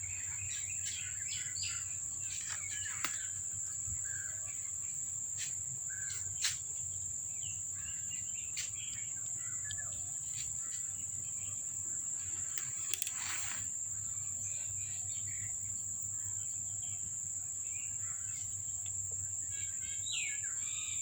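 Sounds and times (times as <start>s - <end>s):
crickets chirring: 0.0s - 21.0s
sharp clicks: 12.5s - 13.6s.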